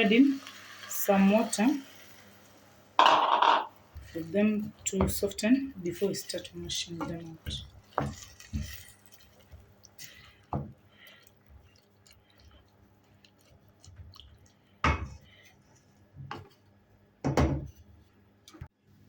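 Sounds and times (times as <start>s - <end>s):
cookware knocking and clunking: 3.0s - 3.7s.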